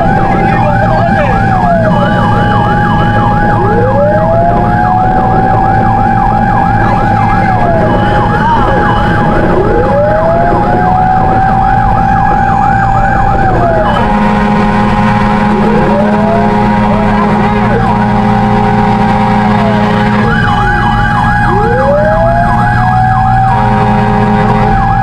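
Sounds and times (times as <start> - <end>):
engine and road noise: 0.0 - 25.0
fast yelp siren: 0.0 - 25.0
wailing siren: 0.0 - 25.0
steady horn-like tone: 5.1 - 20.8, 23.2 - 25.0.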